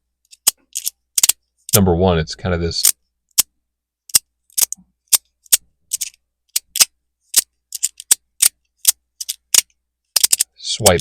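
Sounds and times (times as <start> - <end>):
magnetic fidget slider clicking: 4.1 - 10.5.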